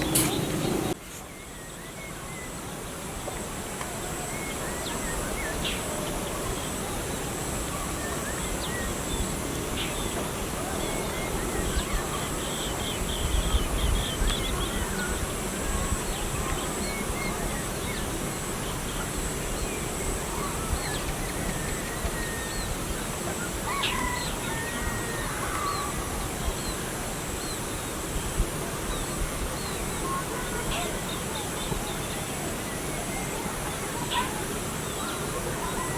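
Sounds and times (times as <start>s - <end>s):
birds chirping and whistling: 0.0s - 2.6s.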